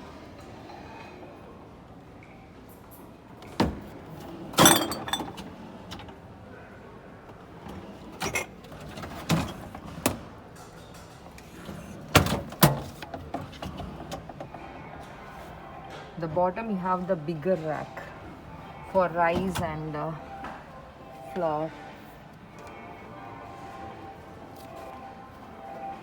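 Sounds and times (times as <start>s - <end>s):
cabinet doors opening and shutting: 3.4s - 6.2s, 7.6s - 10.4s, 11.4s - 14.5s, 19.2s - 20.0s.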